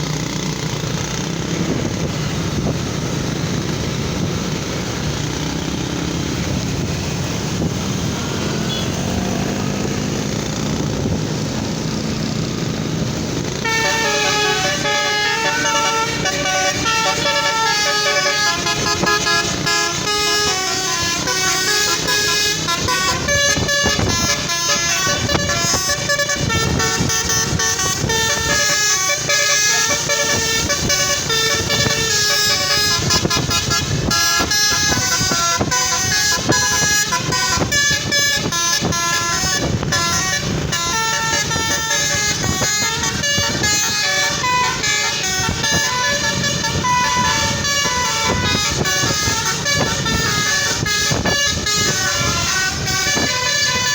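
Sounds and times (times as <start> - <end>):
multi-tone bus horn melody: 0.9 - 11.9, 12.5 - 53.9.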